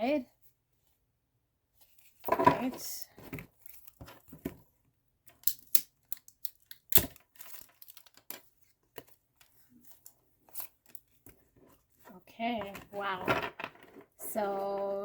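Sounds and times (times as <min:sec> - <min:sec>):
plastic wrap snapping: 0:05.4 - 0:08.4
plastic wrapping crinkling: 0:06.1 - 0:08.5.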